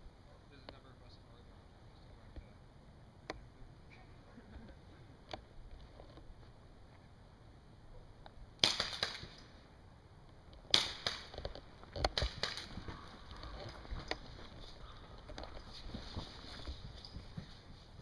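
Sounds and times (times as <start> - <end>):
airsoft gun snaps: 8.6 - 9.5, 10.7 - 12.8.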